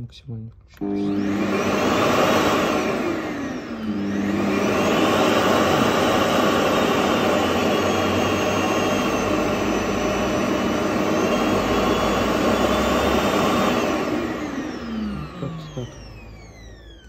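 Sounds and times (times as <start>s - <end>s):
vacuum cleaner motor whine: 0.8s - 17.0s.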